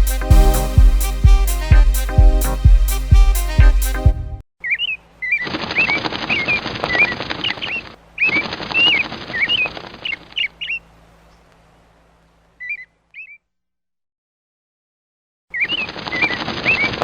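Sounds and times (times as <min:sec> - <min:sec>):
short bird chirps: 0:04.6 - 0:10.9, 0:12.6 - 0:13.5, 0:15.5 - 0:17.0
rapid wing flapping: 0:05.4 - 0:10.4, 0:15.7 - 0:17.0.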